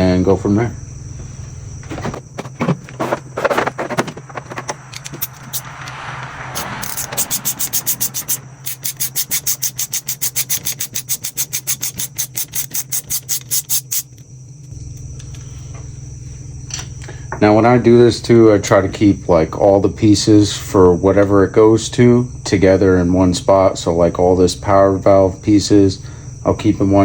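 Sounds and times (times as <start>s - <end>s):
scraping rub: 1.8s - 14.1s
ratchet wrench clicking: 4.9s - 5.9s, 6.5s - 14.2s.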